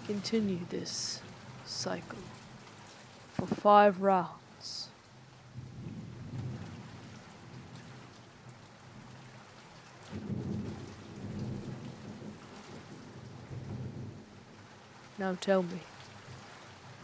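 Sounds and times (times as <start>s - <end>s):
steady rain falling: 0.0s - 17.0s
low rolling thunder: 5.5s - 9.2s, 10.1s - 14.9s.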